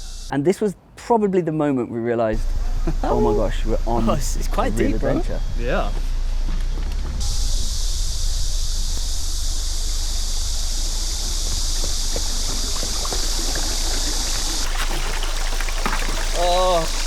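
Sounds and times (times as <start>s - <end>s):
stream rushing over rocks: 12.2s - 17.0s.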